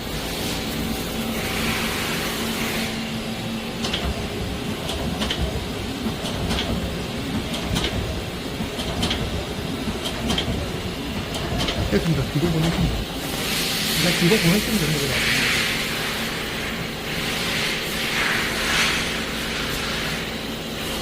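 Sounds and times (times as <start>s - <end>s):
air hissing: 0.0s - 3.2s, 8.7s - 21.0s
lathe humming: 0.0s - 21.0s.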